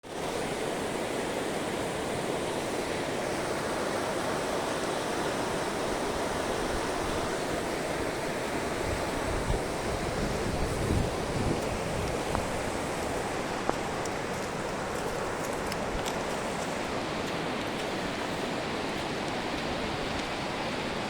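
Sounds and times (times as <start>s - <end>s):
wind rumble on microphone: 5.9s - 21.0s.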